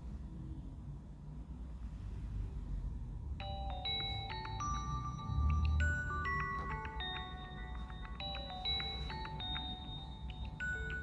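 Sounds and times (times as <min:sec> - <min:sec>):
smartphone ringtone melody: 0:03.4 - 0:11.0.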